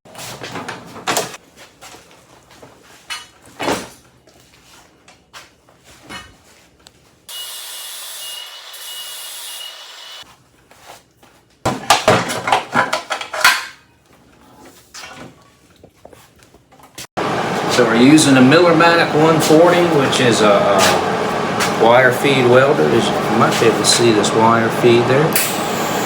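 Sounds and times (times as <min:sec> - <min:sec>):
angle grinder whining: 0:07.3 - 0:10.2, 0:17.2 - 0:26.0.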